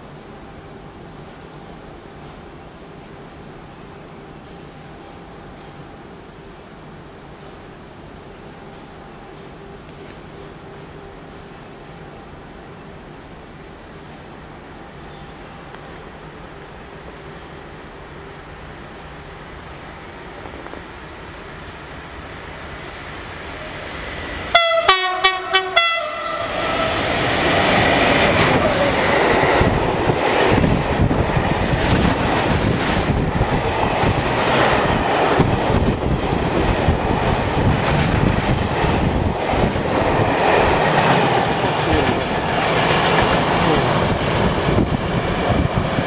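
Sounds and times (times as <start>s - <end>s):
freight train rumble: 0.0s - 46.0s
locomotive horn blasts: 24.5s - 27.0s.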